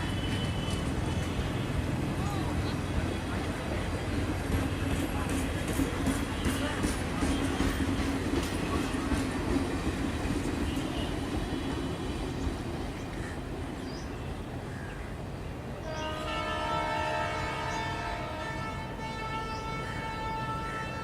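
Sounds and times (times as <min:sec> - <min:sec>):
electric train passing: 0:00.0 - 0:13.8.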